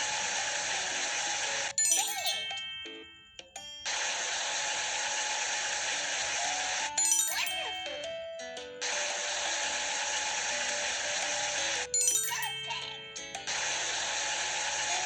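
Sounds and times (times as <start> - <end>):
bell-like chimes with sliding tones: 1.8 - 4.2, 7.0 - 8.1, 11.8 - 13.0.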